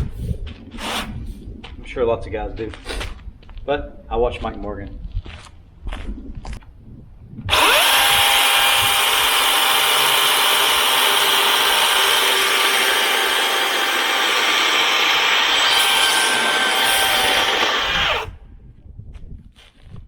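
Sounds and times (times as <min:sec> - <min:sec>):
chainsaw cutting log: 0:07.5 - 0:18.3.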